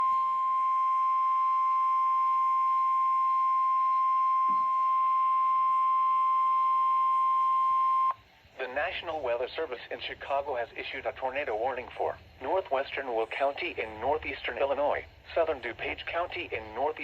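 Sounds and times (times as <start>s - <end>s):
steady alarm beep: 0.0s - 8.2s
faint hiss: 1.0s - 17.0s.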